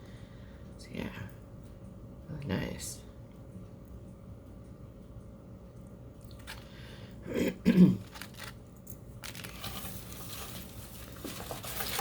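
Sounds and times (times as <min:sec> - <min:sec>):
packaging crinkling: 0:07.9 - 0:12.0.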